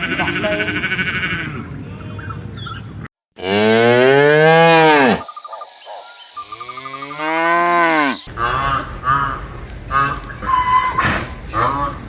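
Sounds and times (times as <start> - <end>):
cow mooing: 0.0 - 2.2, 3.4 - 5.3, 6.5 - 8.3.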